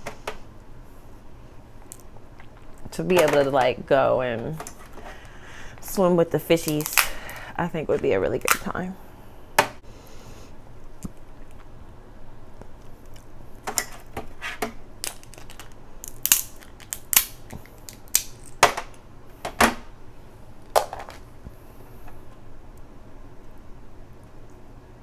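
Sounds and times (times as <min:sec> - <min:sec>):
crab shell cracking: 0:06.6 - 0:07.5, 0:15.0 - 0:19.0.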